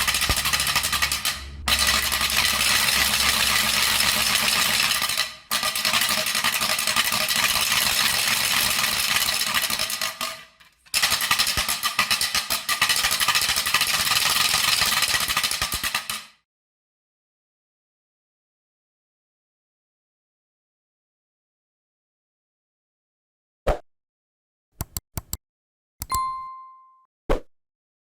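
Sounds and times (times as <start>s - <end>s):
wooden ratchet clacking: 0.0s - 8.1s, 8.8s - 16.2s.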